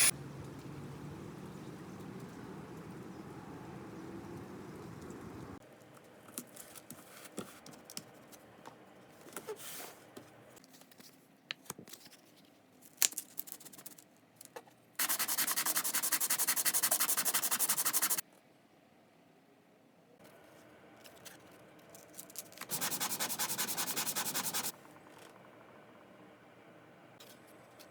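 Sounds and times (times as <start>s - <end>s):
fast rasping on metal: 15.0s - 18.2s, 22.7s - 24.7s.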